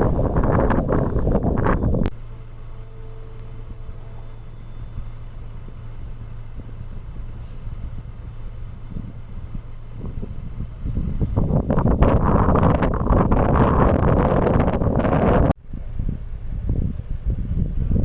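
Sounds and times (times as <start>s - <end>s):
wind buffeting microphone: 0.0s - 2.1s, 4.8s - 18.0s
click: 3.3s - 3.5s.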